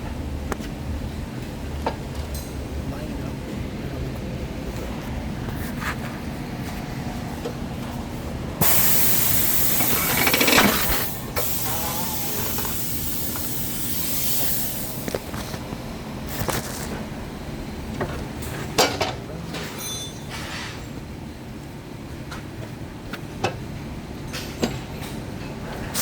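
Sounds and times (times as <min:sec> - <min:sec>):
hissing air: 0:08.6 - 0:15.4.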